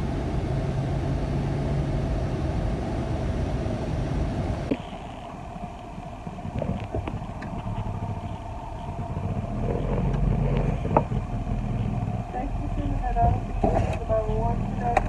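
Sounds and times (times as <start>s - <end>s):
car engine and road noise: 0.0s - 15.0s.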